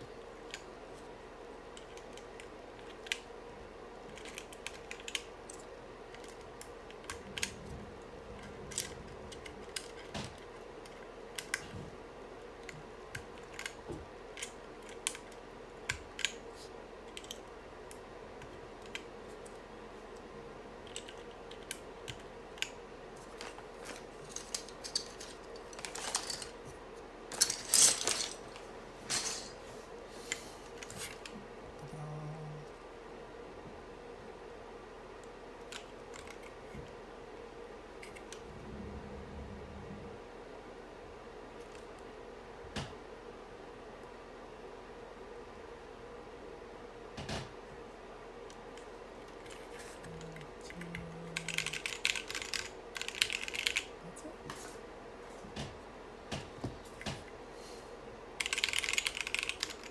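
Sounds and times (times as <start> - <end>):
mechanical keyboard clicks: 50.7 - 53.9, 58.4 - 59.9.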